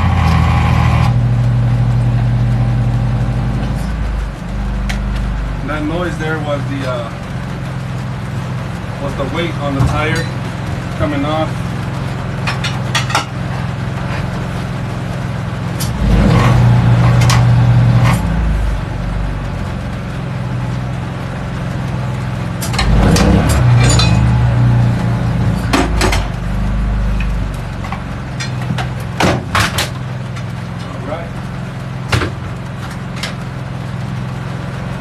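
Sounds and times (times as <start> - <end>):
generator humming: 0.0 - 35.0
metal clinks and knocks: 22.6 - 24.5.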